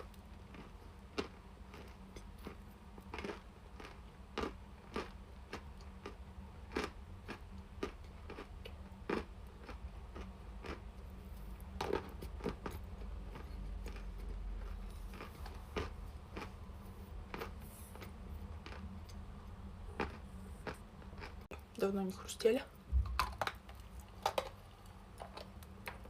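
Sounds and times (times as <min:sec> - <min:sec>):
chalk being chewed: 0:00.5 - 0:19.2.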